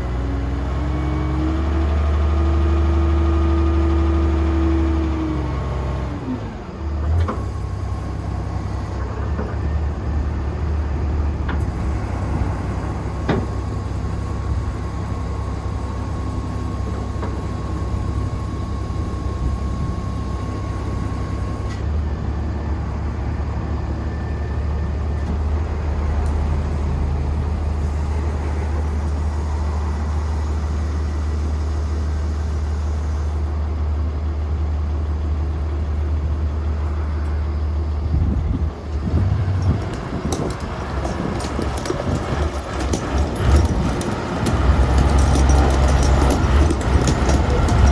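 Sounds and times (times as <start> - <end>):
wheel loader diesel engine running: 33.6 - 47.9
machine clicks and knocks: 39.5 - 47.9.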